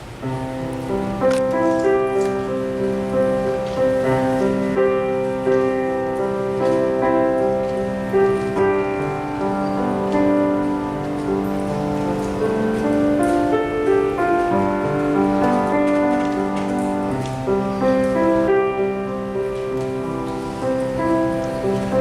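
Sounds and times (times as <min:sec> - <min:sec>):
keyboard playing slow chords: 0:00.0 - 0:22.0.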